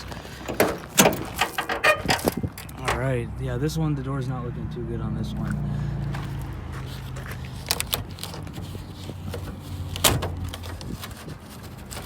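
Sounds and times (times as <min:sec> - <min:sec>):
car door mechanism clicking: 0:07.7 - 0:10.9.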